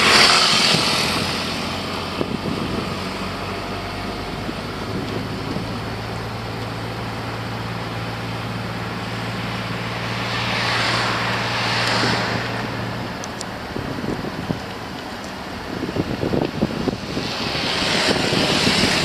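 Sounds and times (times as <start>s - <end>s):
rush of noise: 0.0s - 19.0s
vehicle engine humming: 0.0s - 19.0s.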